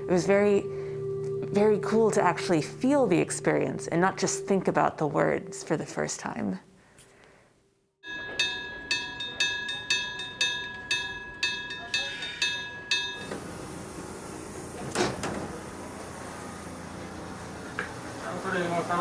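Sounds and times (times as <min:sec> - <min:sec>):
level-crossing bell ringing: 0:00.0 - 0:06.5, 0:08.0 - 0:14.2.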